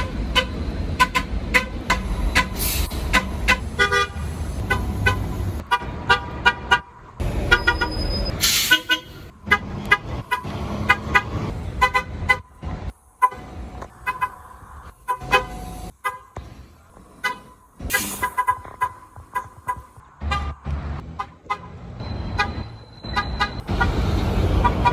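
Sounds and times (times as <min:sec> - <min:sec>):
bus horns honking: 0:00.0 - 0:16.4, 0:17.2 - 0:24.9
bus engine rumble: 0:00.0 - 0:24.9
air hissing: 0:02.0 - 0:05.6, 0:08.4 - 0:08.9, 0:17.9 - 0:18.4.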